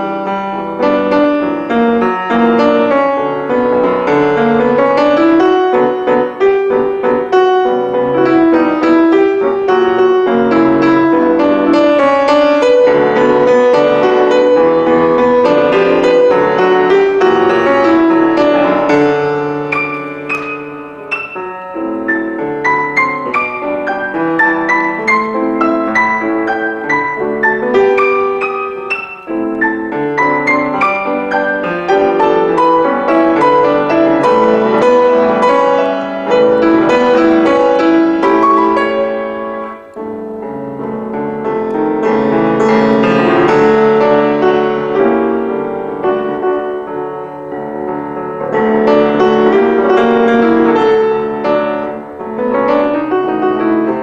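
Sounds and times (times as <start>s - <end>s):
solo piano playing: 0.0s - 54.0s.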